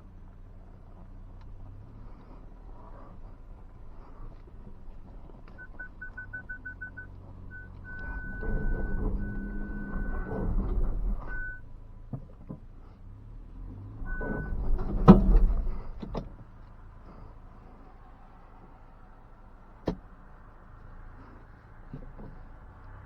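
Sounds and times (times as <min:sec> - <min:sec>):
vehicle knocks and clunks: 0:00.8 - 0:23.0
low rumble: 0:02.6 - 0:11.9.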